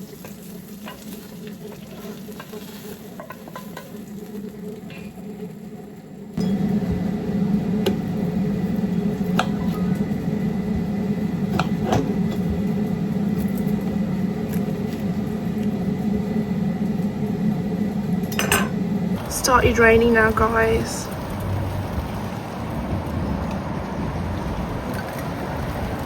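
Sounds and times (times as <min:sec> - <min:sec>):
kitchen appliance humming: 0:06.4 - 0:26.0.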